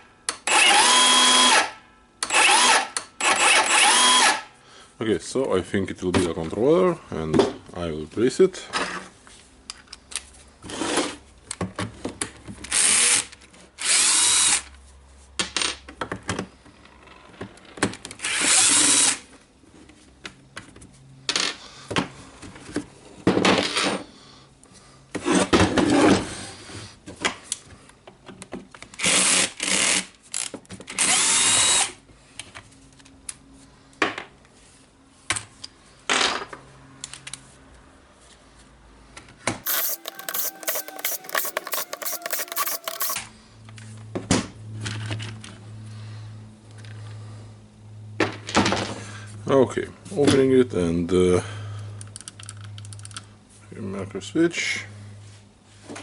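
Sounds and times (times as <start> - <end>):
electric screwdriver whining: 2.3 - 4.4, 39.7 - 43.2.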